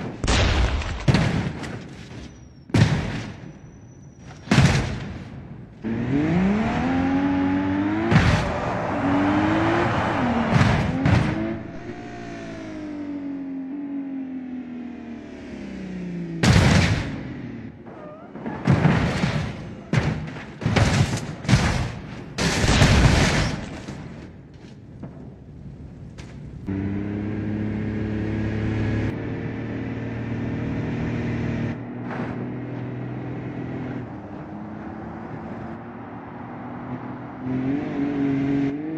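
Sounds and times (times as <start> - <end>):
sharp bangs: 0.0 - 5.7, 7.8 - 12.9, 16.2 - 25.5
engine revving: 5.8 - 17.9, 26.7 - 38.9.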